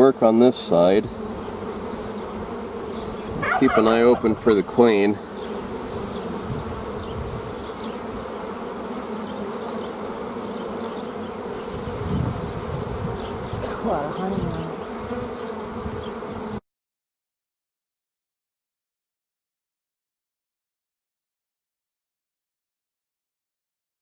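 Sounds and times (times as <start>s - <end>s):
honeybees buzzing: 0.0s - 16.6s.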